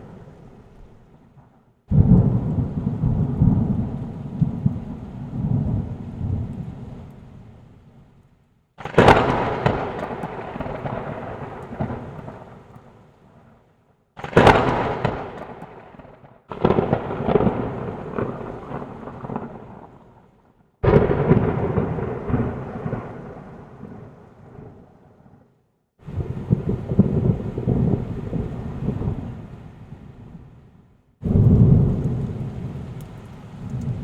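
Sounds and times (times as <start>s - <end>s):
thunder cracking: 1.4s - 6.5s, 8.8s - 12.7s, 14.2s - 20.1s, 20.8s - 24.9s, 26.0s - 29.4s, 31.2s - 34.0s.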